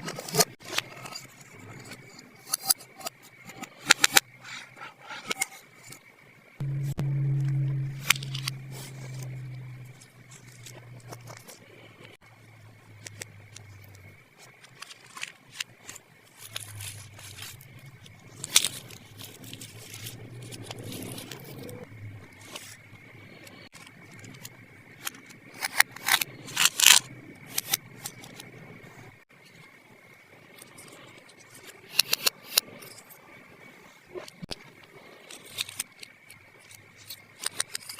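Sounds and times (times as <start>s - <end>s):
plastic toy pieces clicking: 24.2s - 28.3s.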